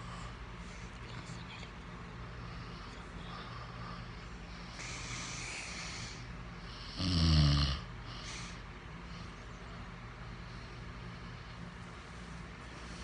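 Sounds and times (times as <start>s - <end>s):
man snoring: 6.7s - 8.2s.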